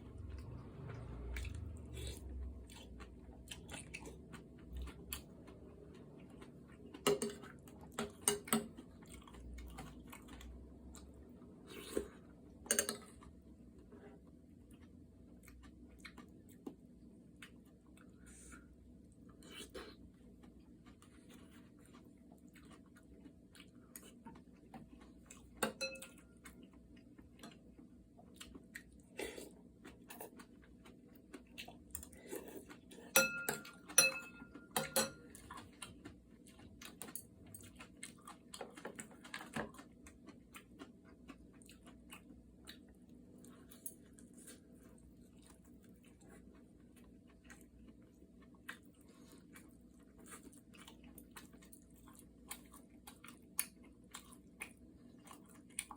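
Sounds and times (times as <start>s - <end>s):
quiet chewing: 0.2s - 55.9s
utensils clinking against dishes: 25.6s - 26.2s, 33.1s - 35.4s.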